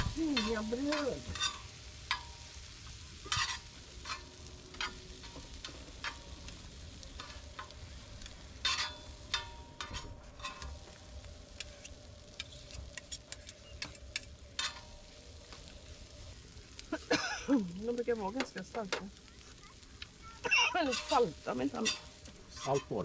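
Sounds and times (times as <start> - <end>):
kitchen utensils clinking: 20.5 - 23.0.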